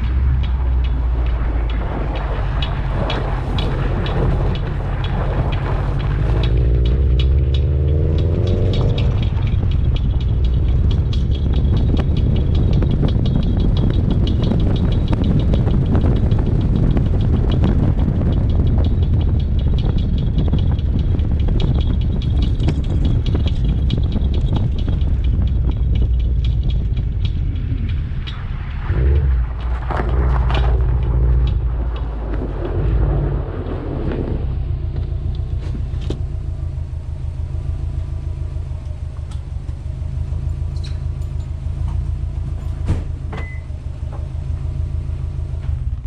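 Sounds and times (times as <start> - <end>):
grinding noise: 0.0 - 36.7
high squeaky ticks: 0.0 - 36.7, 37.3 - 42.3
car engine rumbling: 0.0 - 46.0.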